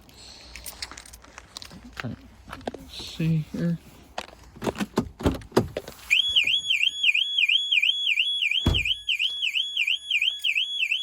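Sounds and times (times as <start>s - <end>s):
car alarm warbling siren: 6.1s - 11.0s
dull thump: 8.6s - 9.0s.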